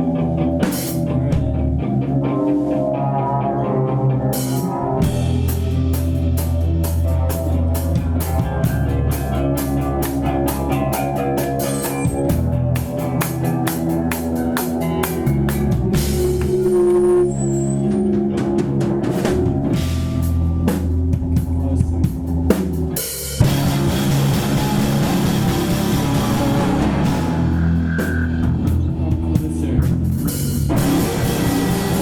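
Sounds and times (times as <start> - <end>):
rock band playing live: 0.0 - 32.0
drum kit hitting: 18.2 - 32.0.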